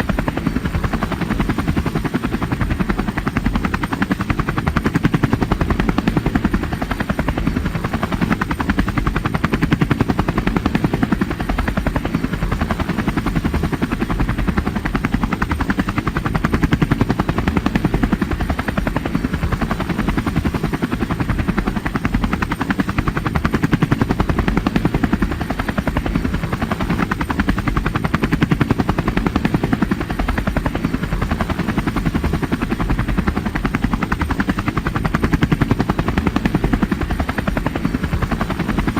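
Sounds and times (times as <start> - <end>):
helicopter engine whine: 0.0 - 38.9
helicopter rotor chopping: 0.0 - 38.9.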